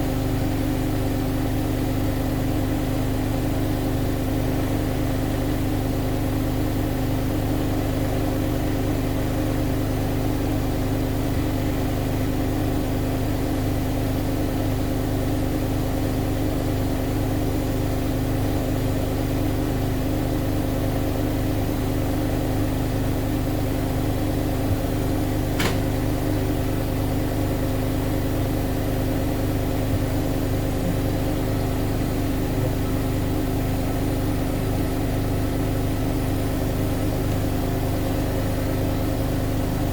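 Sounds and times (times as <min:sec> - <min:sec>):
washing machine humming: 0:00.0 - 0:39.9
washing machine click: 0:25.4 - 0:26.4.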